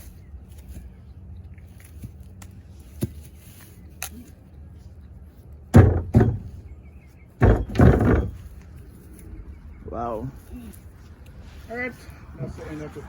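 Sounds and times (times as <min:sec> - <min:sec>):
heavy chopping thuds: 0:05.7 - 0:06.7, 0:07.4 - 0:08.5.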